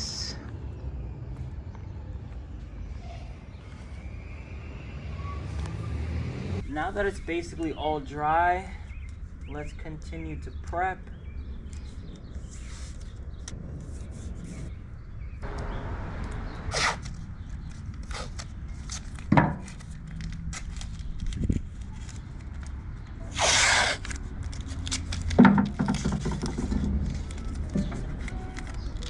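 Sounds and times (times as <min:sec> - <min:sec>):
short rustling or tearing: 0:17.8 - 0:22.6.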